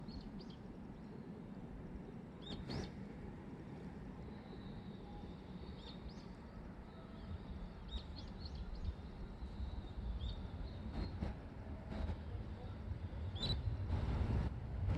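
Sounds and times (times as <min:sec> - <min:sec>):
faint low rumble: 0:10.6 - 0:14.9.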